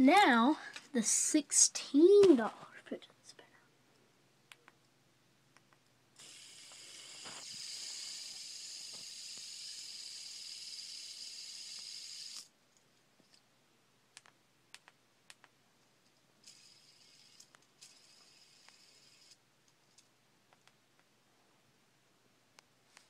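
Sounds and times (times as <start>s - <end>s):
fidget spinner whirring: 6.2s - 12.5s, 16.4s - 19.4s.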